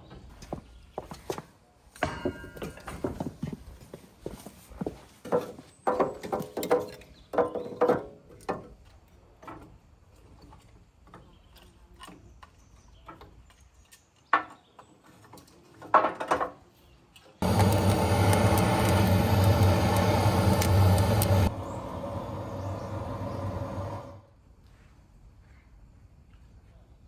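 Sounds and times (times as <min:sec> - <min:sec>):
loud steady rumble: 0:17.4 - 0:24.3.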